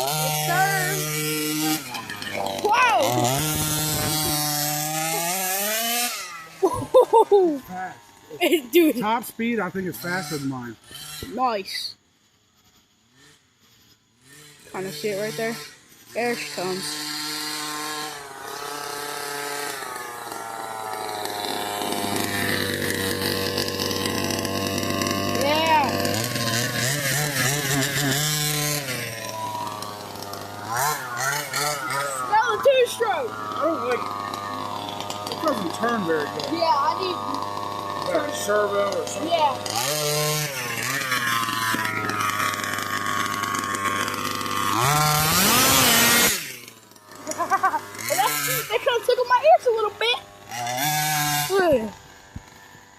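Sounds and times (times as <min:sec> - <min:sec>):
radio-controlled car engine: 0:00.0 - 0:52.9.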